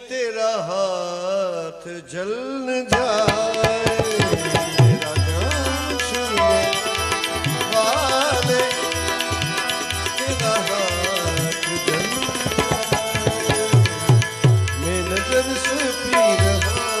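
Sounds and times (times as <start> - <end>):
tabla playing rhythm: 2.9 - 17.0
wavering melody line: 4.2 - 17.0.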